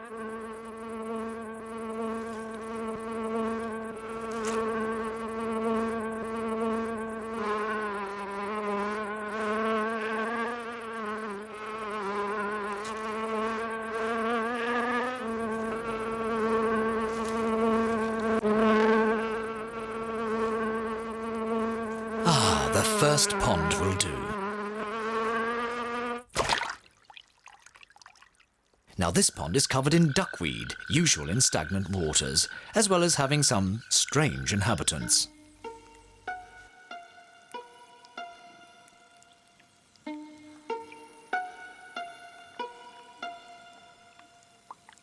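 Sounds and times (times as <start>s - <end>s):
beetle wings buzzing: 0.0s - 26.7s, 29.0s - 45.0s.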